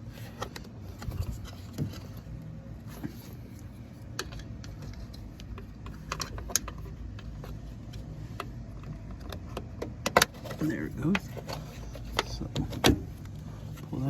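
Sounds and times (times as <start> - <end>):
plastic parts clicking: 4.0 - 13.3.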